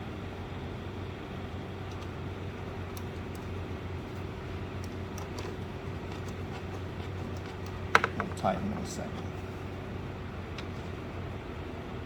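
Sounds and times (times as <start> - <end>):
low machine hum: 0.0 - 12.0.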